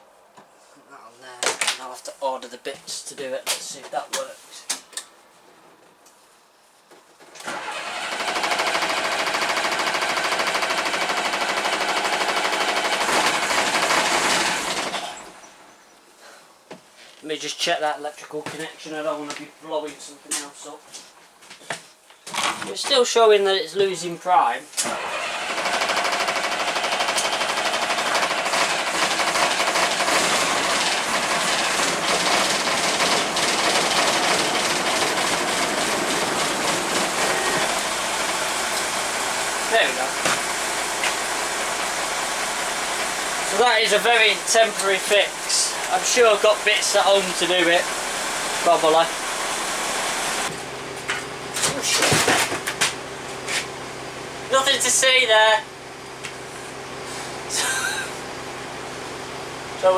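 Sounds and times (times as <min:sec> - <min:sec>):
diesel engine cranking: 0:07.4 - 0:15.6, 0:24.8 - 0:55.0.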